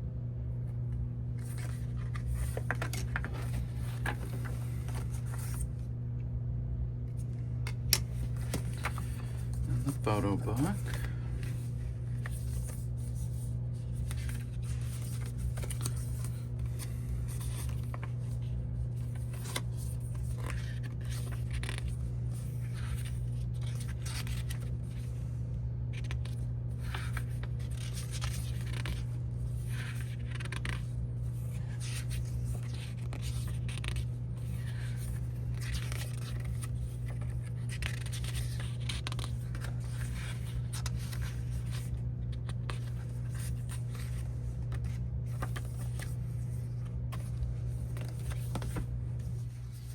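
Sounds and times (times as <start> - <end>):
steady low hum: 0.0 - 49.9
paper and plastic rustling: 1.4 - 5.7, 7.2 - 25.0, 26.0 - 49.9.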